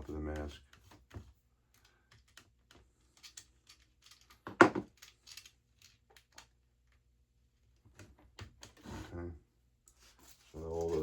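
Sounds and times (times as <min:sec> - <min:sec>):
small screws and washers clicking: 0:03.1 - 0:06.5.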